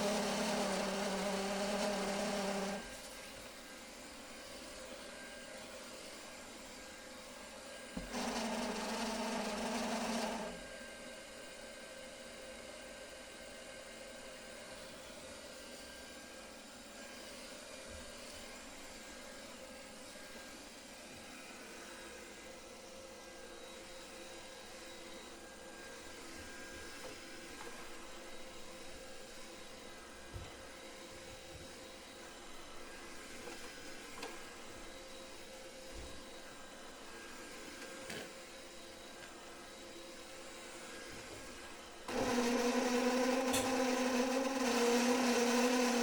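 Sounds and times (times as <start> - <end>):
robot vacuum whirring: 0.0 - 3.2, 7.9 - 10.8, 31.7 - 46.0
robot vacuum whirring hum: 0.0 - 11.4, 14.7 - 46.0.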